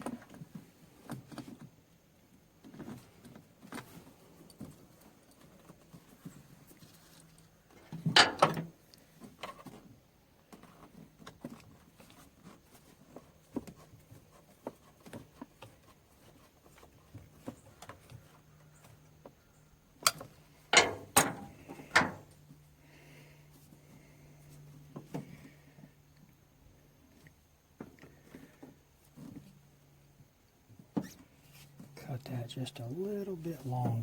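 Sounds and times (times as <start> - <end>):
clicks and clinks of hose clamps: 8.0 - 8.7, 20.0 - 22.3.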